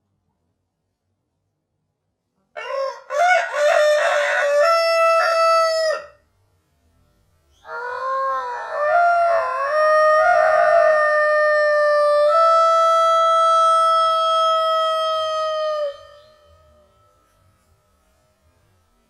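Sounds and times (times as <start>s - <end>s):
slowed rooster crow: 2.6s - 6.2s, 7.6s - 18.0s.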